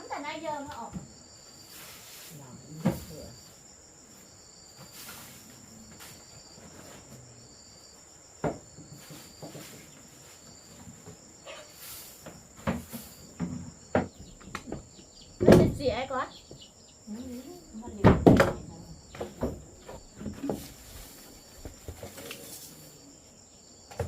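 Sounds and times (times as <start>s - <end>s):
insect chirring: 0.0s - 24.0s
sharp knocks: 12.6s - 16.0s, 18.0s - 20.6s.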